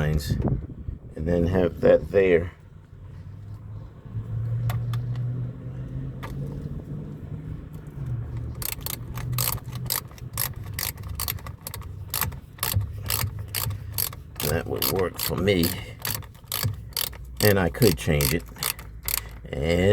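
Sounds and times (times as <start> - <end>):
ratchet wrench clicking: 8.3 - 19.8.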